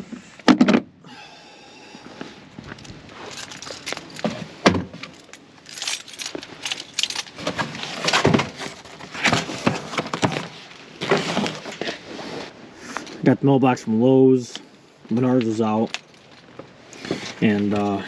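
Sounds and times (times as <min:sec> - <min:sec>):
small hard objects clinking: 0:03.2 - 0:04.3.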